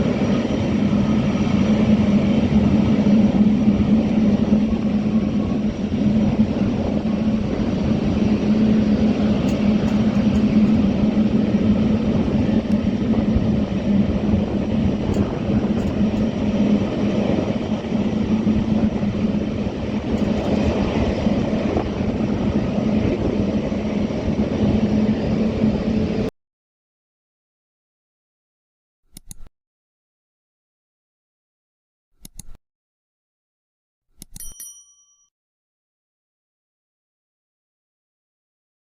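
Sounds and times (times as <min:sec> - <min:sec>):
jet engines running: 0:00.0 - 0:26.3.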